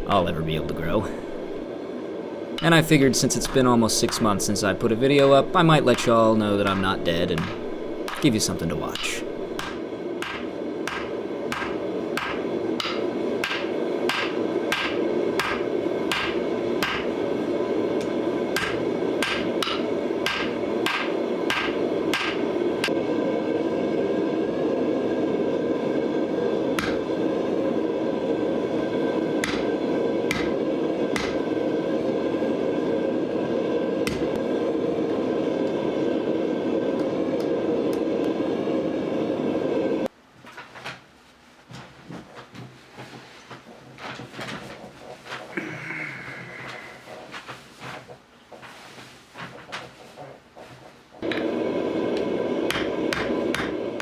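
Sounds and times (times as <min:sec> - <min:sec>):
steady rushing noise: 0:00.0 - 0:40.1.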